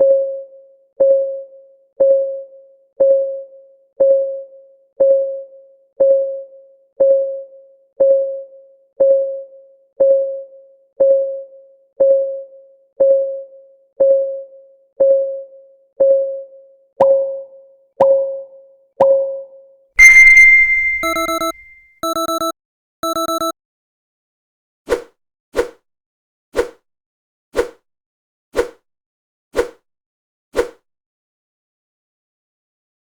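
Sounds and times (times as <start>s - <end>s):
clock ticking: 20.0s - 23.5s.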